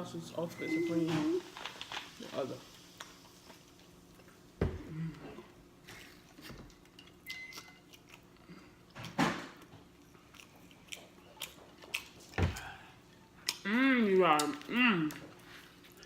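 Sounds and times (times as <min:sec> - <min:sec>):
chewing and lip-smacking: 0:07.5 - 0:08.6, 0:10.0 - 0:12.8.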